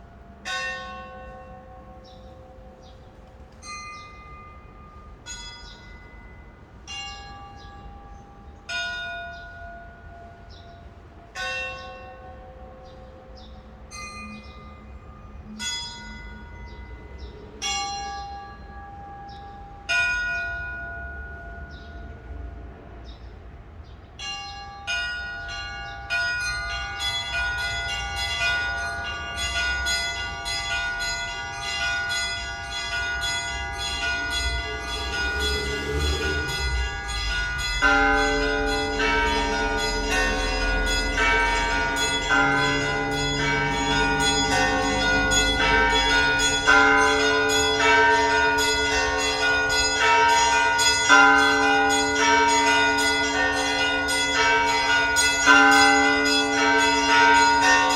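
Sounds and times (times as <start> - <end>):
deep church bells: 0.0 - 57.9
small church bells ringing: 0.0 - 57.9.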